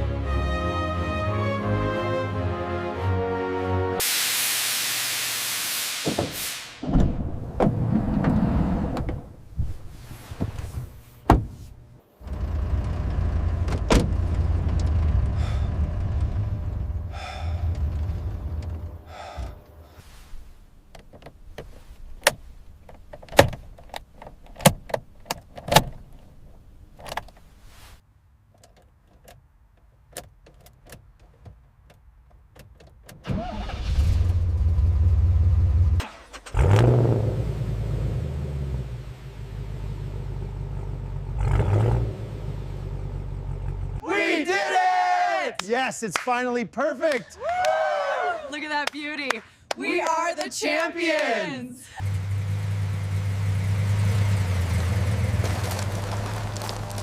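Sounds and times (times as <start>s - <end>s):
car engine rumbling: 6.8s - 27.7s, 33.3s - 44.0s, 51.9s - 57.0s.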